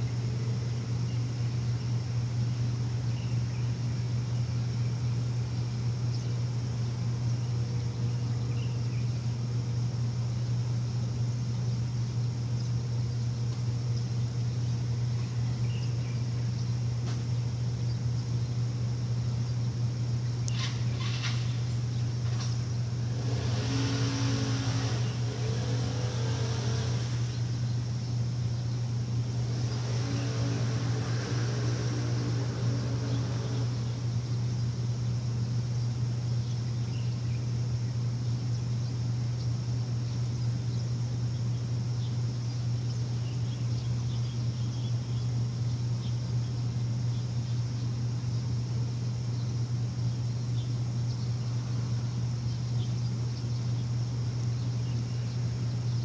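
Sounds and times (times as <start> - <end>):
low machine hum: 0.0 - 56.0
engine-like swells: 20.5 - 37.9.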